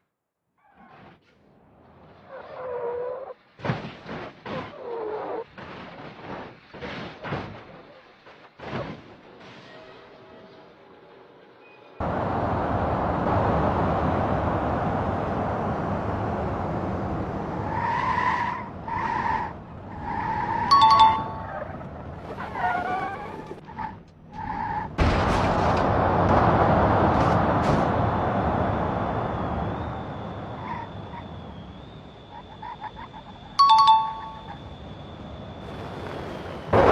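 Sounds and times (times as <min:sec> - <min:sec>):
truck engine running hard: 0:12.0 - 0:23.6, 0:24.8 - 0:36.9.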